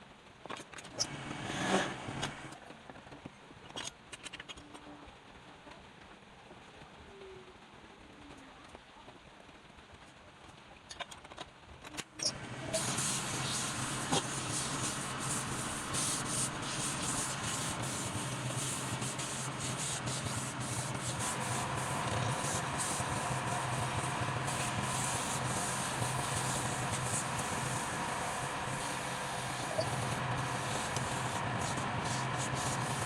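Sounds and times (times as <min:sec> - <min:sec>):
power tool sanding wood: 0:12.4 - 0:33.0.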